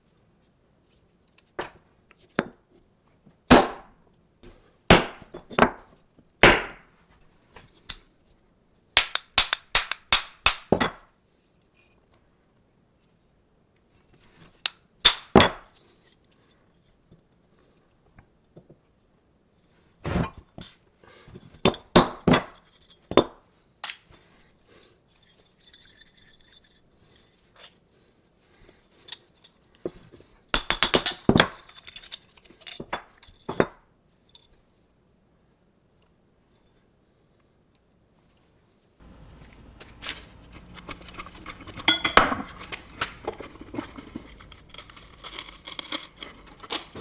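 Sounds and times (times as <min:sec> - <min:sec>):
metal parts and tools clinking: 0:25.2 - 0:27.7, 0:30.6 - 0:33.6, 0:39.0 - 0:47.0.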